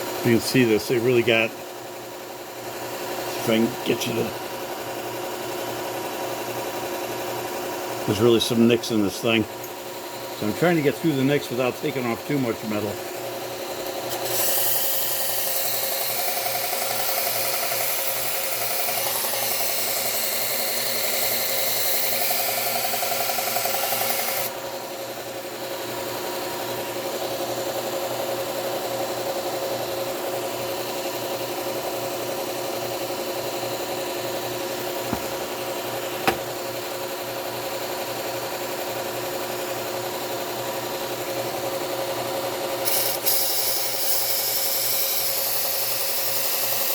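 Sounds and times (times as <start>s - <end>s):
belt sander motor hum: 2.6s - 38.1s, 41.8s - 46.9s
blade grinding on belt sander: 10.4s - 24.6s, 42.8s - 46.9s.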